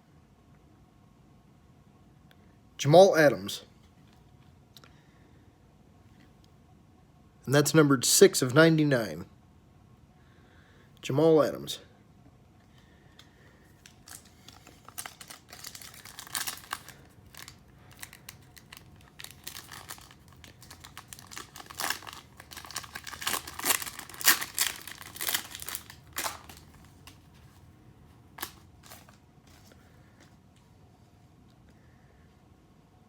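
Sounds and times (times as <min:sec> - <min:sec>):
card pack wrapper crinkling: 0:13.8 - 0:27.6, 0:28.3 - 0:29.8.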